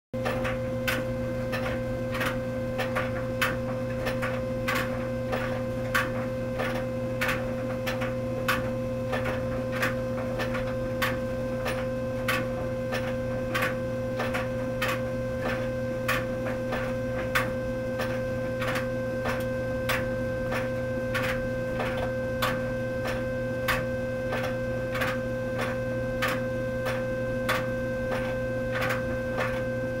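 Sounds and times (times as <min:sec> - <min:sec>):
clothes dryer whining hum: 0:00.2 - 0:30.0.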